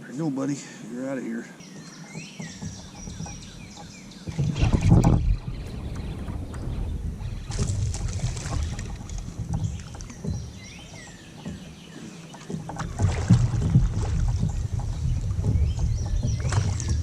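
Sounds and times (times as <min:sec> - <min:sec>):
water noise: 0:00.0 - 0:17.0
wind noise on microphone: 0:02.8 - 0:11.1, 0:12.8 - 0:17.0.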